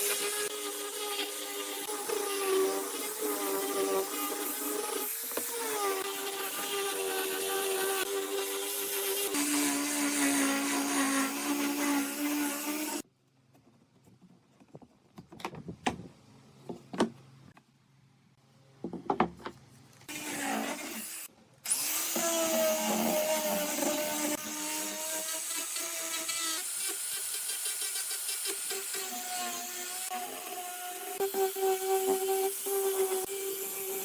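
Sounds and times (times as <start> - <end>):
power tool whining on wood: 20.1 - 34.0.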